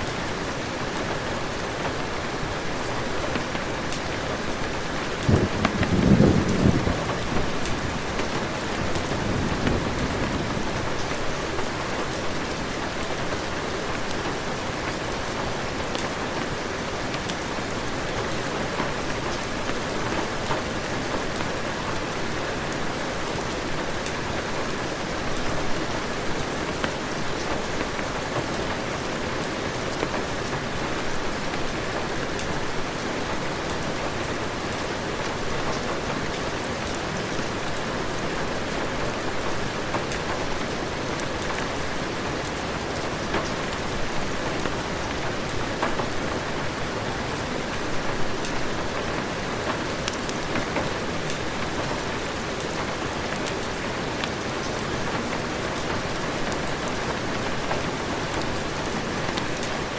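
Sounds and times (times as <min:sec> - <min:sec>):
heavy rain: 0:00.0 - 0:59.9
low thunder rumble: 0:05.2 - 0:11.4.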